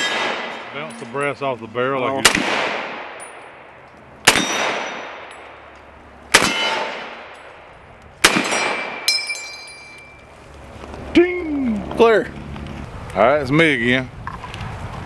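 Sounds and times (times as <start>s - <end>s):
rifle shots echoing: 0.0s - 0.9s, 2.2s - 5.7s, 6.3s - 9.2s
metallic ringing: 8.4s - 10.2s.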